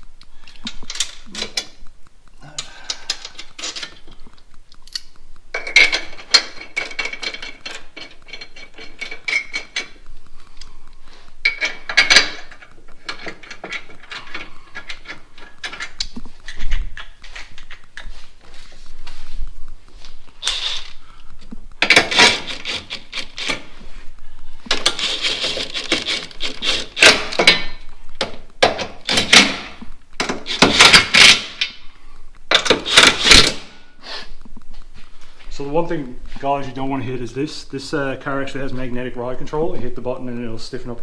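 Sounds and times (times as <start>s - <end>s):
rapid clicking: 0.0s - 41.0s
metal hardware clinking and rattling: 0.6s - 1.9s, 2.6s - 4.2s, 4.8s - 10.1s, 11.4s - 18.6s, 20.0s - 21.0s, 21.8s - 23.9s, 24.6s - 31.8s, 32.5s - 33.8s.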